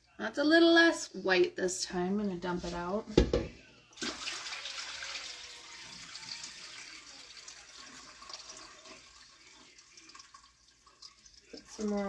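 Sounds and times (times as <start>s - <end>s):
water pouring into sink: 4.0s - 12.0s.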